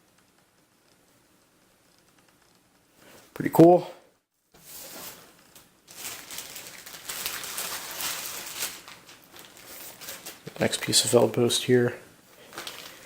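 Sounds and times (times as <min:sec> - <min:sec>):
paper rustling and crinkling: 0:04.6 - 0:11.5, 0:12.4 - 0:13.0.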